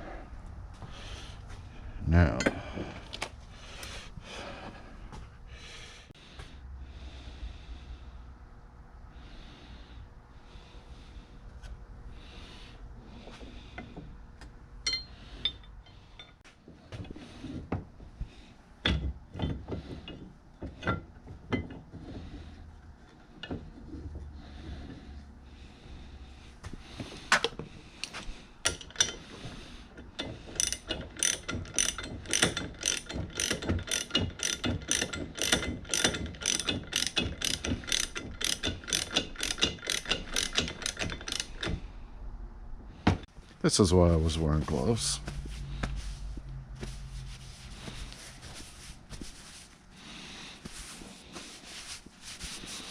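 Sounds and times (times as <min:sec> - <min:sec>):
metal clicks and knocks: 0:28.6 - 0:29.3, 0:30.0 - 0:41.8
quick ratcheting clicks: 0:30.6 - 0:41.7.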